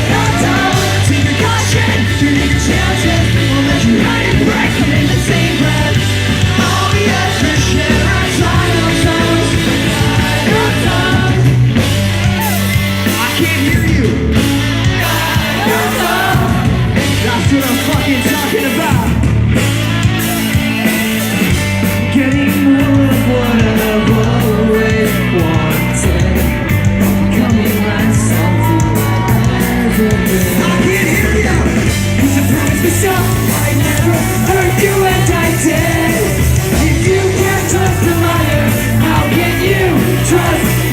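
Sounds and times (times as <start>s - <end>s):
pop-punk band playing live: 0.0s - 40.9s
person singing: 22.0s - 40.9s.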